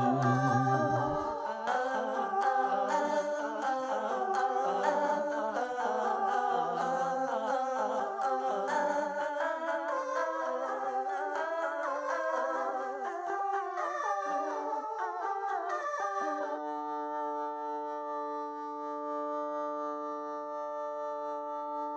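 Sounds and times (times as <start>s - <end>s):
layered song mashup music: 0.0s - 1.3s.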